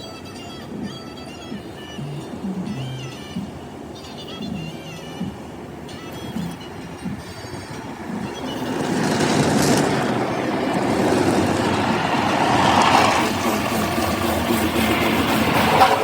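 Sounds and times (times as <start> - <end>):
car rushing noise: 5.2 - 16.0.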